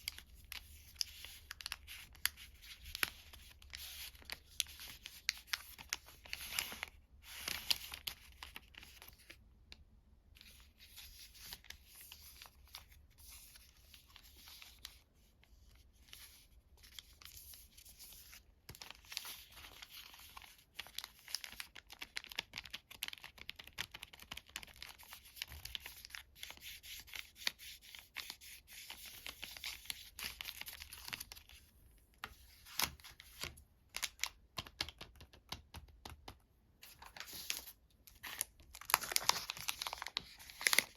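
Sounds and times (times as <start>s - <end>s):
wrappers tearing and crinkling: 37.2s - 40.9s.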